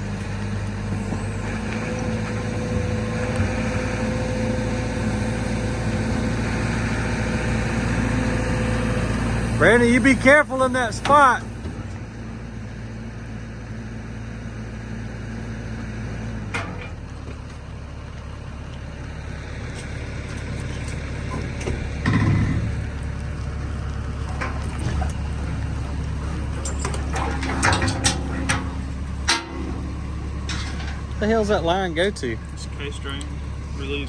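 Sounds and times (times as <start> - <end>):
heavy machine engine running: 0.0 - 34.0
metal clanks and knocks: 16.4 - 17.6, 20.3 - 23.1, 24.2 - 32.7.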